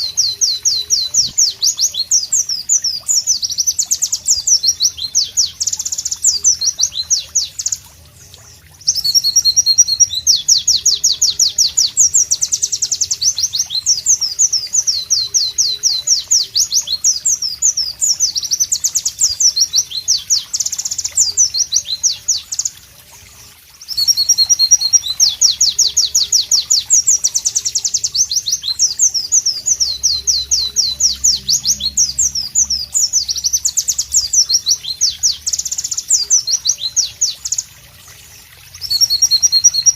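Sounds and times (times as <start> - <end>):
bird singing high trills: 0.0 - 22.8, 23.8 - 37.7, 38.7 - 39.9.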